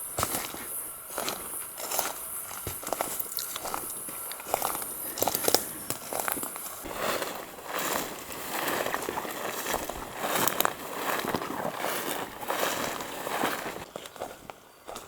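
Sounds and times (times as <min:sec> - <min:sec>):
steady high hiss: 0:00.0 - 0:06.9
footsteps on dry leaves and twigs: 0:00.0 - 0:15.0.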